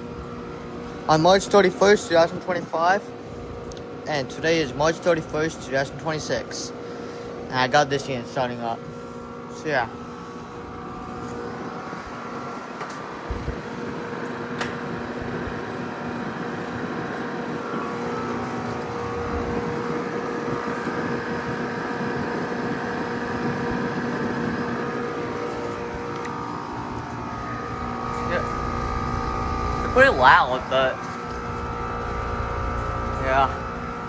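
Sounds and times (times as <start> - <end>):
heat pump compressor hum: 0.0 - 34.0
fan whoosh: 14.8 - 34.0.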